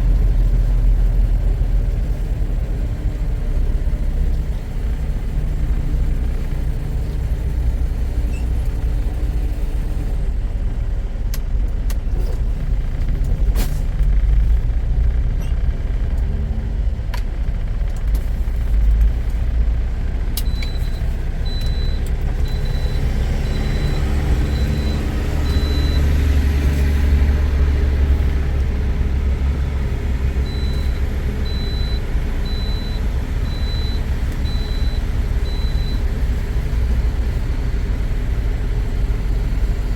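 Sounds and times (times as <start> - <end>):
truck engine and road rumble: 0.0 - 39.9.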